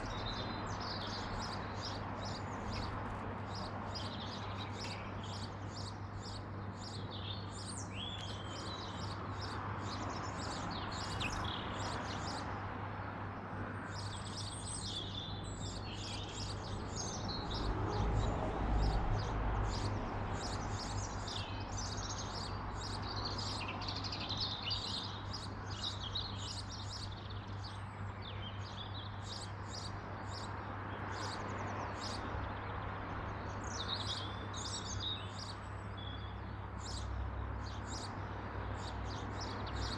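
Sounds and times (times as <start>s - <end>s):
birds chirping and singing: 0.0s - 12.5s, 14.0s - 18.3s.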